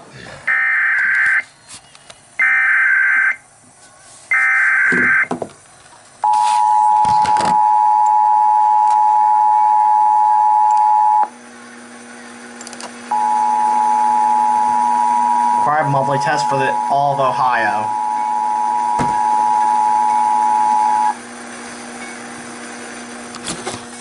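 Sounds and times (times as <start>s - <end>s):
steady two-tone attention signal: 6.3s - 11.3s, 13.1s - 21.2s
low hum: 13.1s - 21.2s.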